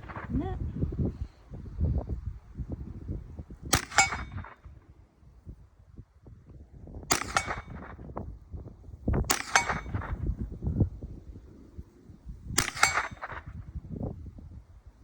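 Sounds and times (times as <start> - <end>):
gunshots: 0.0 - 0.5, 3.7 - 4.7, 7.1 - 8.0, 9.3 - 10.2, 12.6 - 13.5
steel target ringing: 3.8 - 4.5.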